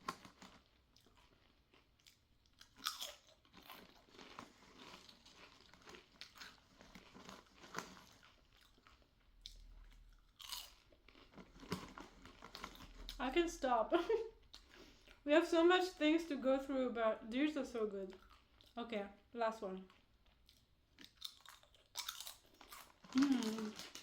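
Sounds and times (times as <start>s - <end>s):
crunching potato chips: 0.0s - 13.2s, 19.9s - 24.0s.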